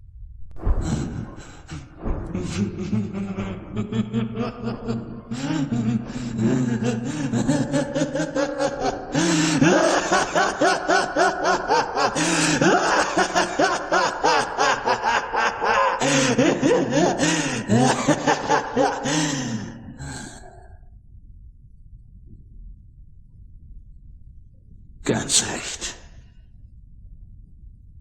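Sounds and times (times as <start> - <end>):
man laughing villainously: 0.9 - 20.5.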